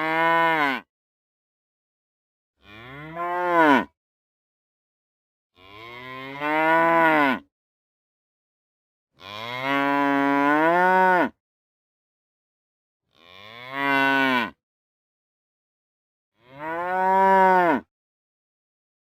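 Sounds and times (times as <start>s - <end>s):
cows mooing: 2.6s - 3.9s, 5.6s - 7.4s, 13.4s - 14.6s, 16.4s - 17.8s.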